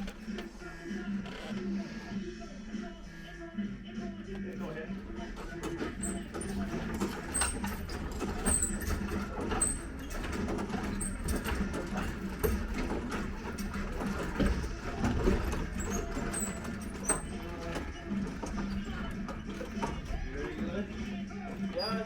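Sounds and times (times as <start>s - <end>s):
tools and lumber knocking: 5.3s - 22.0s.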